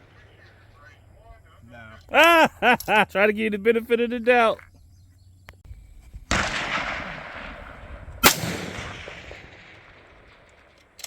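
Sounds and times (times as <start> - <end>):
rifle shots with echo: 6.3 - 11.0.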